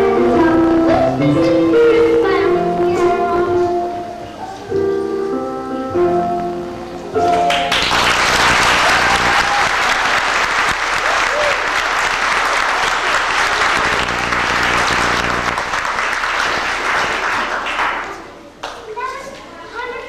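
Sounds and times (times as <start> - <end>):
audience applauding: 7.3 - 18.8.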